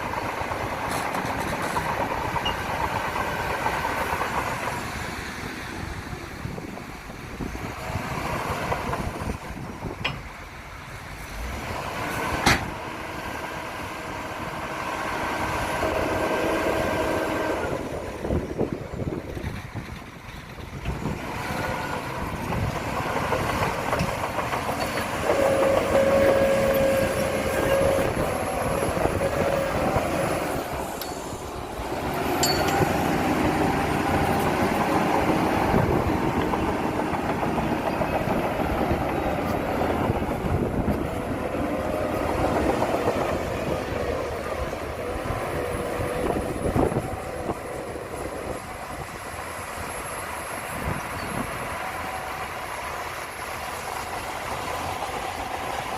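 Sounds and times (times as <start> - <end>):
diesel engine under load: 0.0 - 55.9
whining tone: 24.8 - 31.4.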